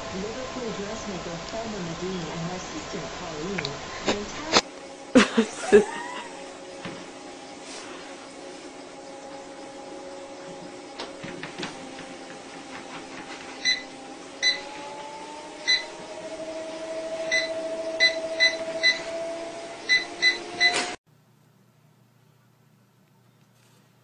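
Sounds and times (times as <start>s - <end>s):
machine hum: 0.0s - 23.3s
short electronic beeps: 13.6s - 14.7s, 17.3s - 19.0s, 19.9s - 20.9s.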